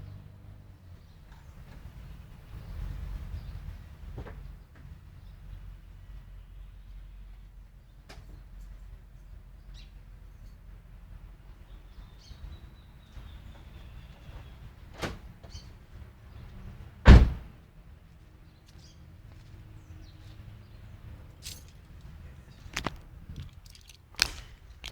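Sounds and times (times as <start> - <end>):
loud thump: 17.1 - 17.5.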